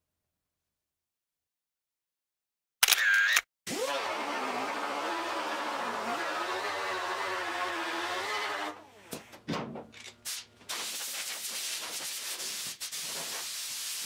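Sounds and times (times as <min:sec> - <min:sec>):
power tool stripping paint: 0:03.7 - 0:09.0.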